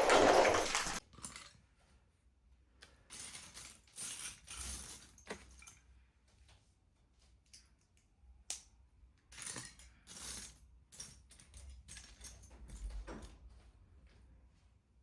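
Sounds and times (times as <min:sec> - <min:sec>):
plastic pieces clattering: 0:00.0 - 0:01.4.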